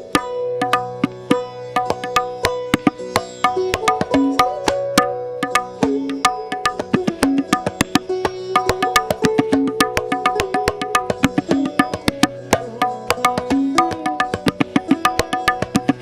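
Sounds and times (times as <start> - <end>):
tabla drum roll: 0.0 - 16.0
melody loop: 3.5 - 16.0.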